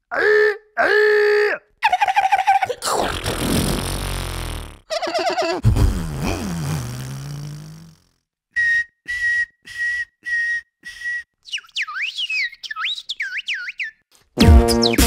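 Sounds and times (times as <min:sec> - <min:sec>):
beatboxer warbling whistle: 0:08.6 - 0:13.6.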